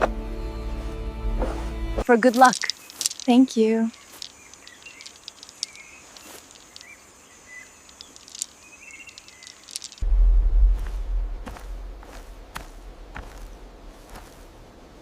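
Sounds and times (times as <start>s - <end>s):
scattered ticks: 2.2s - 10.0s
faint chirps: 2.6s - 10.0s
loud deep rumble: 10.0s - 13.1s.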